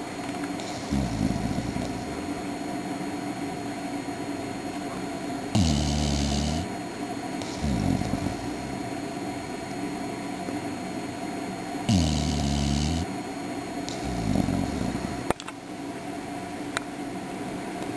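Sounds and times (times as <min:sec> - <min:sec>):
steady background hum: 0:00.0 - 0:17.9
pet snoring: 0:00.6 - 0:02.4, 0:05.5 - 0:06.8, 0:07.4 - 0:08.9, 0:11.8 - 0:13.1, 0:13.8 - 0:15.3.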